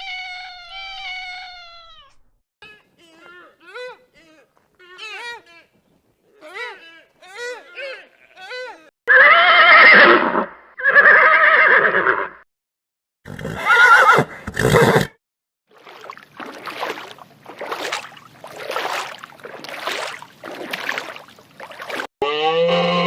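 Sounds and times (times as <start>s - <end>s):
horse whinnying: 9.1s - 12.4s, 13.3s - 15.2s.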